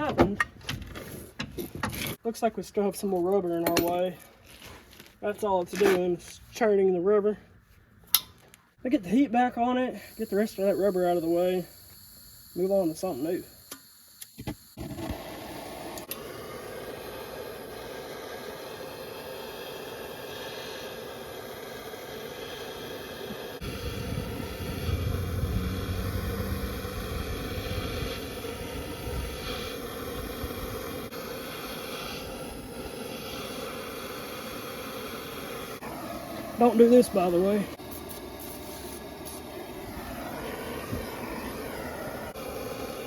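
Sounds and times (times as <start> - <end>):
gas torch flame hissing: 10.0 - 43.0
deep rumble: 23.7 - 28.2.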